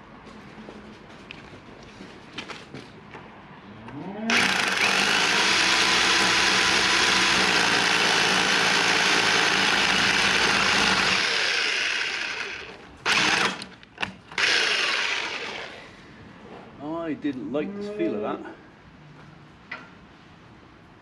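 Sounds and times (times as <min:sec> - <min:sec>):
power drill boring into wall: 0:04.3 - 0:13.7, 0:14.3 - 0:15.8.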